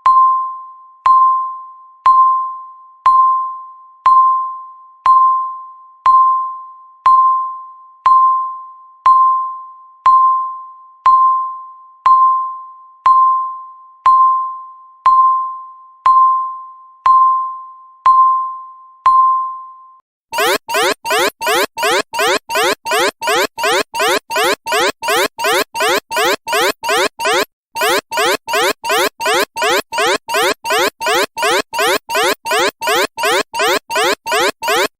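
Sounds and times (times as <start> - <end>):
countdown timer beeps: 20.4 - 34.9.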